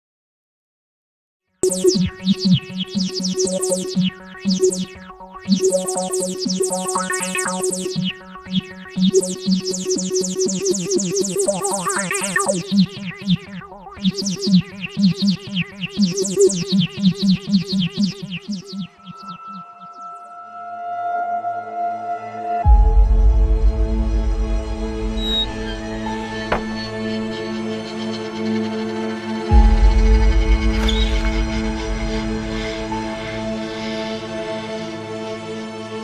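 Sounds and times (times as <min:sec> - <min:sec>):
synthesizer music: 0:01.6 - 0:20.2.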